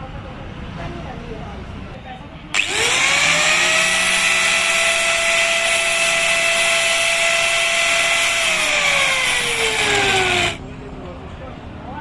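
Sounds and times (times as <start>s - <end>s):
power tool motor whining: 2.5s - 10.6s.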